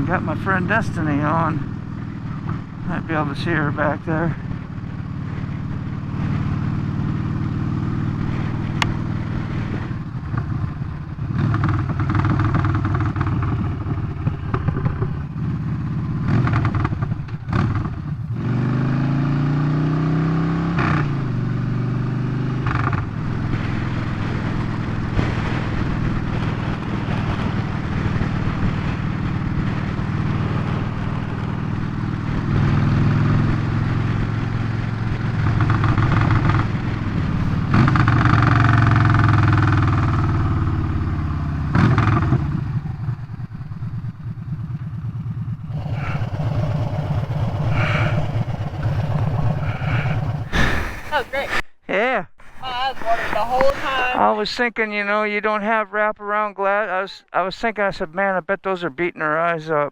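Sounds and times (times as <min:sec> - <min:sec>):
motorcycle engine running: 0:00.0 - 0:51.6
wind rush: 0:45.7 - 0:51.6.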